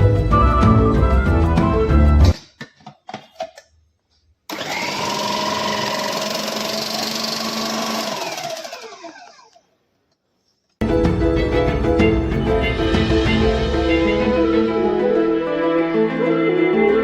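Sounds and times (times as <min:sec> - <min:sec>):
mixer grinder motor whining: 0:04.5 - 0:09.6.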